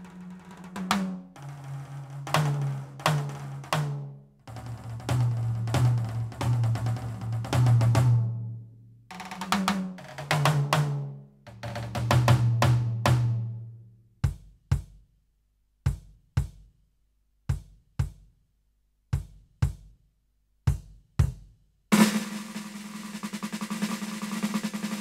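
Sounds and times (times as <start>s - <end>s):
electronic drum fill: 22.0s - 25.0s.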